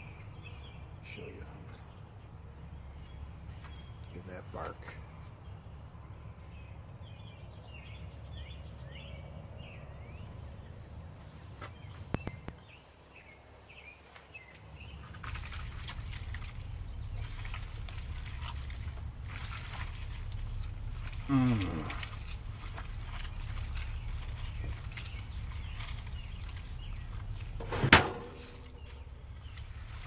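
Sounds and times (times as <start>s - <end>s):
low steady rumble: 0.0s - 30.0s
small birds chirping: 0.0s - 30.0s
clicks and crackles: 12.0s - 12.7s.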